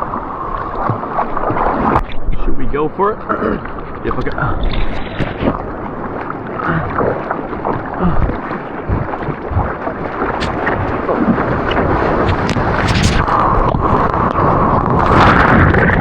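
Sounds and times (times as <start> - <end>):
surf water rushing and splashing: 0.0 - 16.0
wind buffeting microphone: 3.8 - 16.0.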